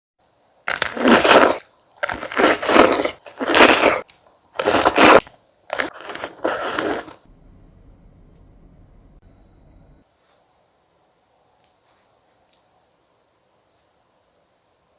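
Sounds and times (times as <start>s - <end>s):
crunchy bites of fresh fruit: 0.6s - 7.3s
faint low room hum: 7.1s - 14.9s.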